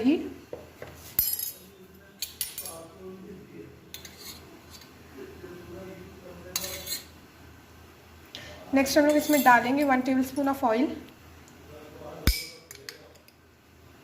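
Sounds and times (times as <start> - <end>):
spoon scraping: 3.9 - 4.9, 6.6 - 7.1, 9.1 - 9.6
spoon clinking against a bowl: 9.1 - 9.6.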